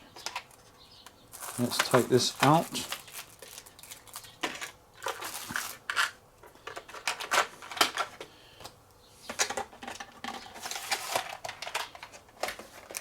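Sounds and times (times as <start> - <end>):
packaging rustling and crinkling: 1.3 - 6.2, 9.8 - 13.0.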